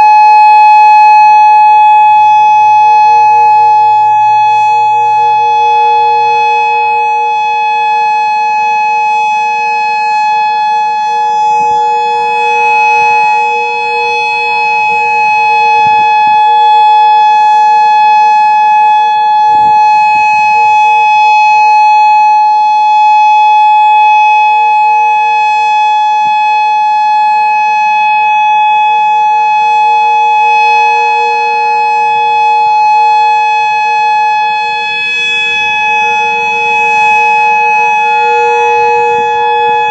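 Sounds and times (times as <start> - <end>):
tornado siren steady tone: 0.0 - 39.9.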